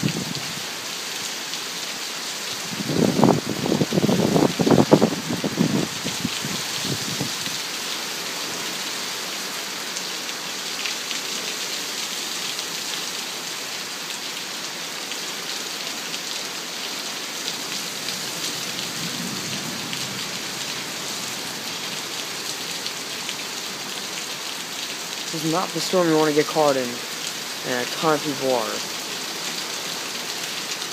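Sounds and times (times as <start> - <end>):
heavy rain pouring: 0.0 - 30.9.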